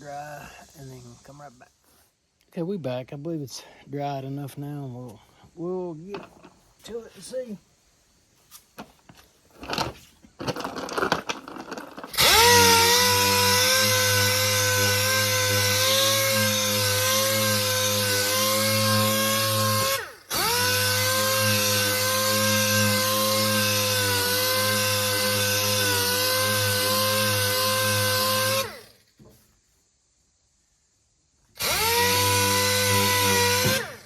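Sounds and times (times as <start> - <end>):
power sander running: 10.4 - 29.0, 31.6 - 34.0.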